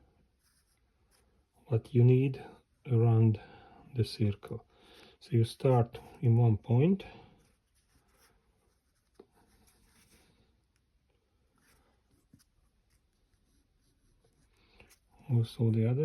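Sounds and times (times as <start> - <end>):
compass scratching paper: 7.4 - 10.8, 11.6 - 15.2.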